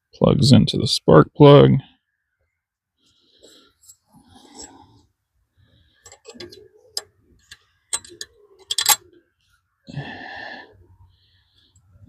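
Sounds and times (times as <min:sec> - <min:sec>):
clicks of handling small parts: 0:06.0 - 0:09.0.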